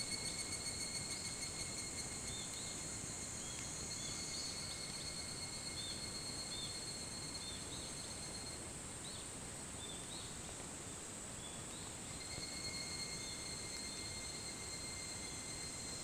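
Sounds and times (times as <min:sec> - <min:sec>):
cicadas calling: 0:00.0 - 0:08.4, 0:12.2 - 0:16.0
high-pitched insect drone: 0:00.0 - 0:08.6, 0:12.2 - 0:16.0.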